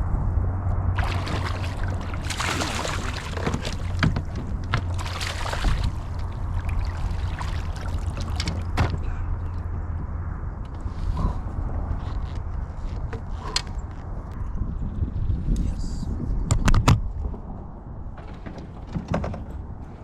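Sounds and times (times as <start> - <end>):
low rumble: 0.0 - 12.9
sharp knocks: 1.0 - 6.3
water splashing against kayak: 1.0 - 9.0.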